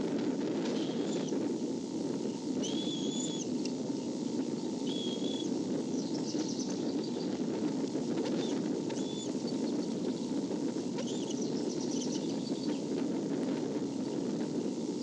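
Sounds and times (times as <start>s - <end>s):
steady rushing background noise: 0.0s - 15.0s
thin whistles: 2.6s - 3.5s, 4.8s - 7.4s, 8.4s - 9.8s, 11.0s - 12.8s
high-pitched bird chirps: 11.0s - 12.8s.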